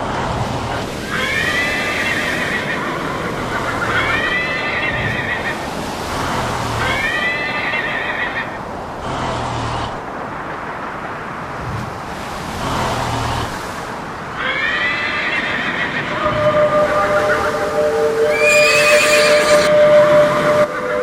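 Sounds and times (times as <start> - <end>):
steady background hiss: 0.0 - 21.0
animal calling: 1.0 - 10.0, 14.4 - 19.8.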